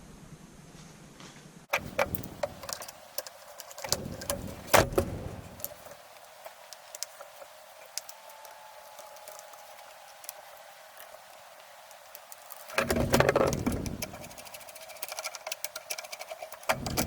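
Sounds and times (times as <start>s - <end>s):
metal clatter: 1.7s - 5.9s, 12.7s - 17.0s.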